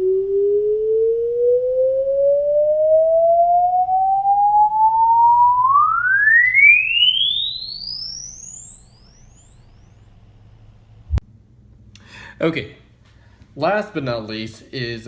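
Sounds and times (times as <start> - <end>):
sine-wave tone sweeping upward: 0.0 - 10.2.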